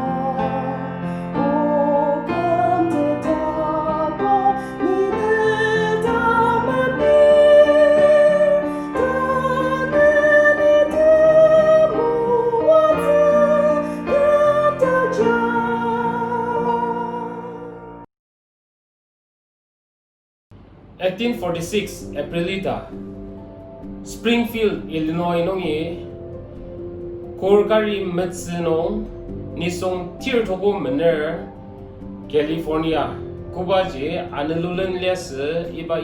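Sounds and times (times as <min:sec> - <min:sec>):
person singing with vibrato: 0:00.0 - 0:18.1.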